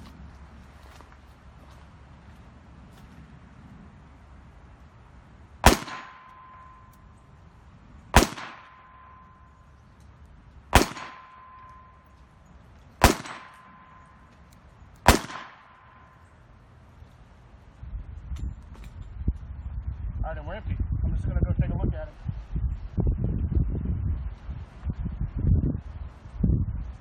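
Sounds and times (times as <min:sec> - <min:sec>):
revolver shots: 0:05.6 - 0:06.9, 0:08.2 - 0:09.3, 0:13.0 - 0:14.1.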